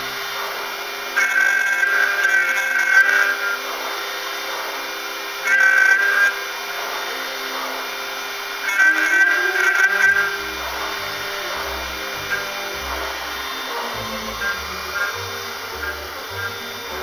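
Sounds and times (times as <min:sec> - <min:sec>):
high cutting whine: 0:00.0 - 0:17.0
milling machine noise: 0:00.0 - 0:17.0
motor tones shifting pitch: 0:05.4 - 0:17.0.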